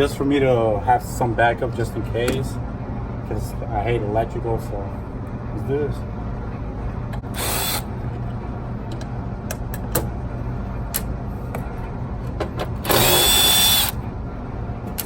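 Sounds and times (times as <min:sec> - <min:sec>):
constant low hum: 0:00.0 - 0:15.0
cordless drill whining: 0:07.4 - 0:07.8, 0:12.9 - 0:14.0.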